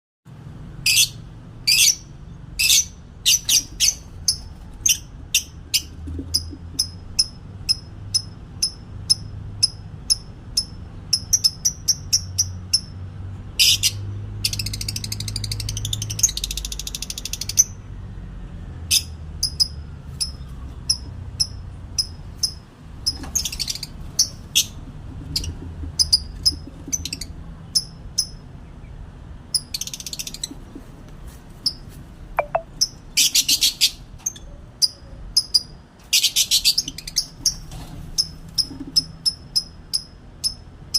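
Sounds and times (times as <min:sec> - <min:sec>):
bird chirping: 0:00.9 - 0:12.9, 0:18.9 - 0:30.6, 0:32.4 - 0:37.6.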